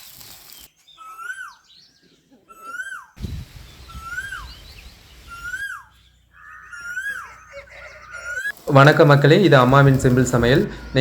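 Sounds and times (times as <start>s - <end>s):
faint bird chirps: 0.5s - 8.6s
bird whistled call: 2.5s - 8.5s.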